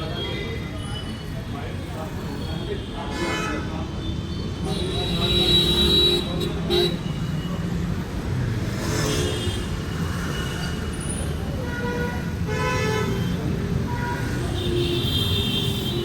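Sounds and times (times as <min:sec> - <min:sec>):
road traffic rumble: 0:00.0 - 0:16.0
vehicle horns honking: 0:02.8 - 0:03.9, 0:04.6 - 0:07.6, 0:11.6 - 0:16.0.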